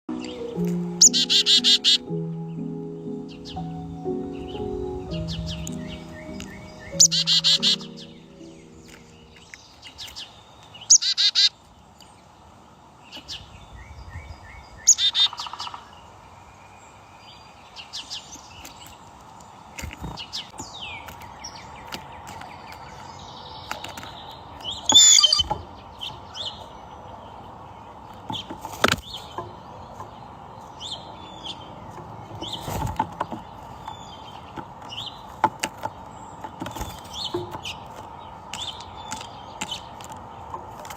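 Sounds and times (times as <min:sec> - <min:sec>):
bird high chirps: 0:00.1 - 0:11.6, 0:13.1 - 0:15.9, 0:20.3 - 0:27.0.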